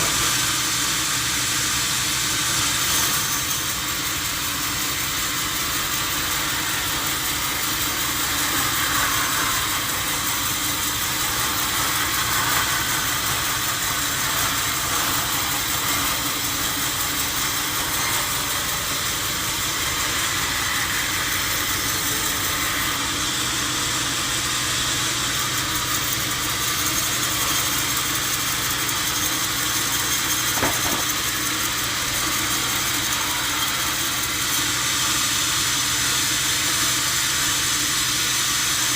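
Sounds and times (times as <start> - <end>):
loud even hiss: 0.0 - 3.4
sawmill motor hum: 0.0 - 38.9
brief knock: 30.6 - 31.0.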